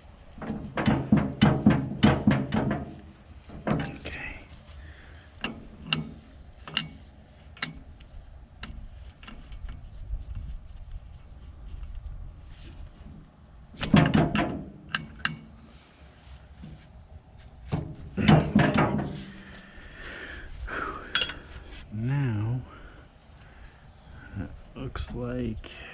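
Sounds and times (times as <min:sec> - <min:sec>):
tools and metal parts clanking: 0:05.4 - 0:07.8, 0:13.8 - 0:15.7, 0:17.7 - 0:19.6, 0:21.0 - 0:21.6.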